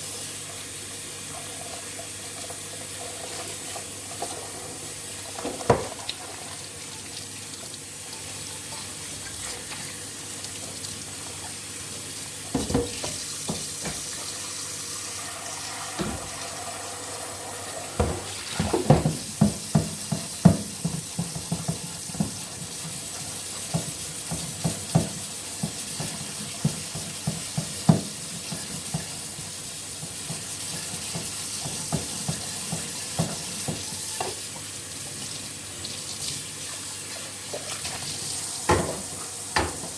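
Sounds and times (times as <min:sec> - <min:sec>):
tap water running into sink: 0:00.1 - 0:39.9
dishes clattering: 0:12.5 - 0:14.1.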